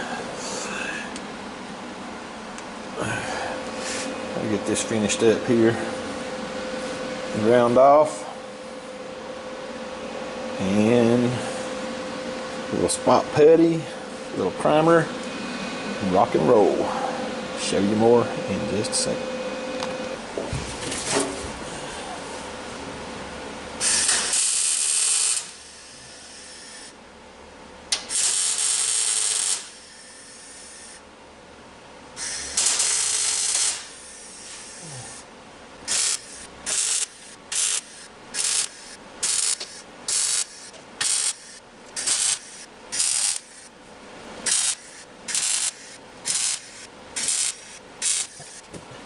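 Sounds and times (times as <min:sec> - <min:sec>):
welding crackling hiss: 0:23.8 - 0:26.9, 0:27.9 - 0:31.0, 0:32.2 - 0:35.2, 0:35.9 - 0:43.7, 0:44.4 - 0:48.7.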